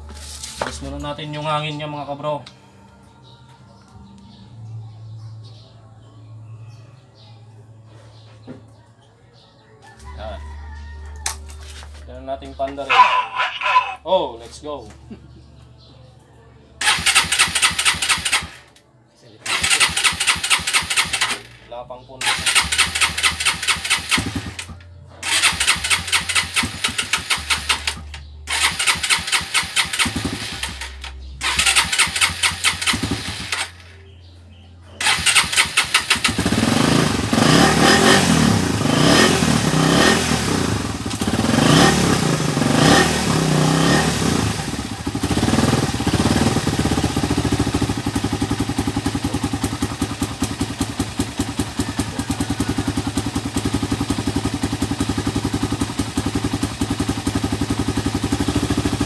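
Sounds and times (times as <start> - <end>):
motorcycle engine revving and idling: 16.8 - 18.7, 19.4 - 59.0
motorcycle engine cranking: 16.8 - 18.8, 19.4 - 33.9, 35.0 - 59.0.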